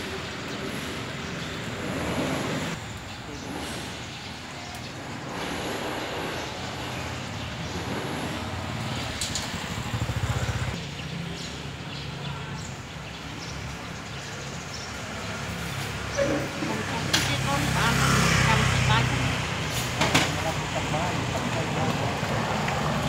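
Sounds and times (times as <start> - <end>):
hum of passing vehicles: 0.0 - 23.0
vehicle passing close: 5.2 - 10.8.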